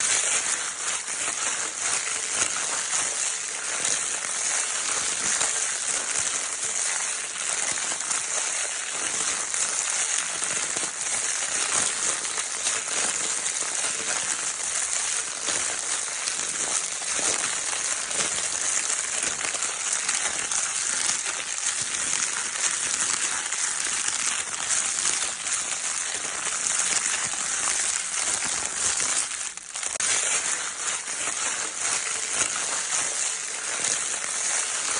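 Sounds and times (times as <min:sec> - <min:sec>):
paper crinkling: 0:00.0 - 0:34.9.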